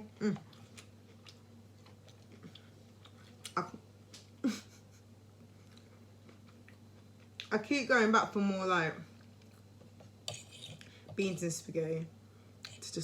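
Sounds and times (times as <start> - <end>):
person chewing: 0.4 - 4.3, 9.2 - 11.0.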